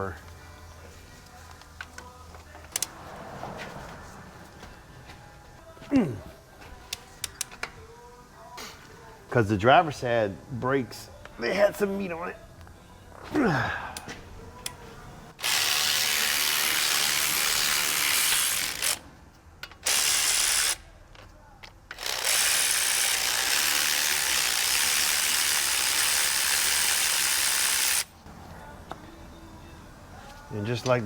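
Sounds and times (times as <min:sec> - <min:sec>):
power ratchet running: 0:15.4 - 0:19.0, 0:19.8 - 0:20.8, 0:21.9 - 0:28.2.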